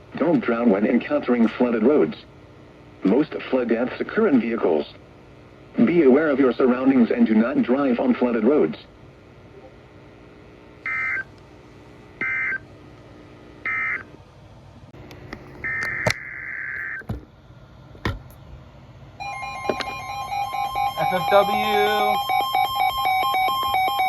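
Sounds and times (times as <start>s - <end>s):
two-tone alert tone: 19.2s - 24.0s
screeching digital data bursts: 19.3s - 24.0s.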